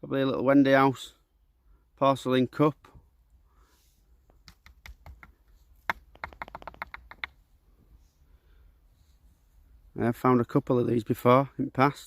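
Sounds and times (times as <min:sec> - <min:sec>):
small hard objects clicking: 0:04.4 - 0:07.4.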